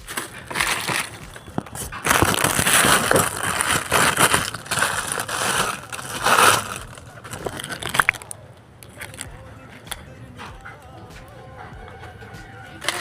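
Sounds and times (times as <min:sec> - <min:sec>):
packaging crackling and crumpling: 0:00.0 - 0:09.4.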